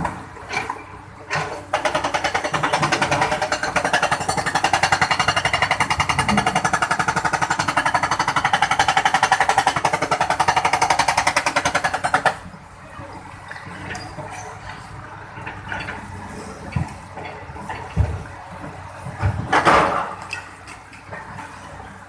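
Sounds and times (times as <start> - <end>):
excavator hammering: 1.3 - 12.4.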